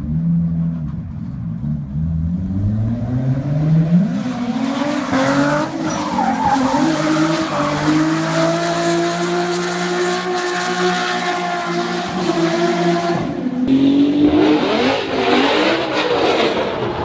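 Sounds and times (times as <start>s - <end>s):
tyres squealing and skidding: 4.4s - 13.3s
car engine revving hard: 6.7s - 17.0s.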